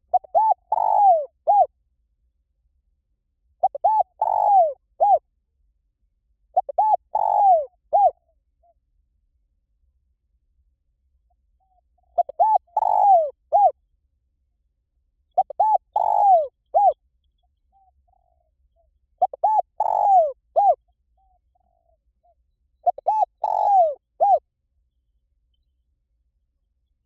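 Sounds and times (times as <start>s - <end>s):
dove cooing: 0.0s - 1.7s, 3.6s - 5.2s, 6.6s - 8.2s, 11.7s - 13.8s, 15.4s - 17.0s, 19.2s - 22.0s, 22.8s - 24.4s.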